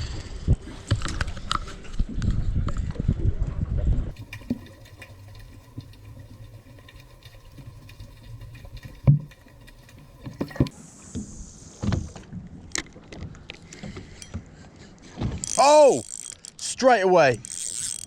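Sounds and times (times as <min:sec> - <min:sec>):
water rumbling against hull: 0:00.5 - 0:10.7.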